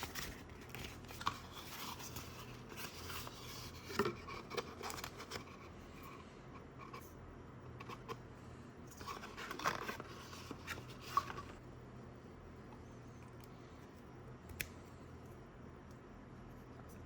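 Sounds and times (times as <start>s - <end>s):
faint low hum: 0.0s - 17.0s
rustling and scraping: 8.9s - 11.6s.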